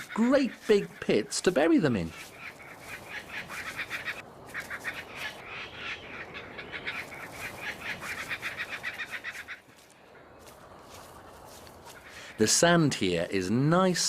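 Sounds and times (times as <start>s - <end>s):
bird chattering call: 0.0s - 9.7s.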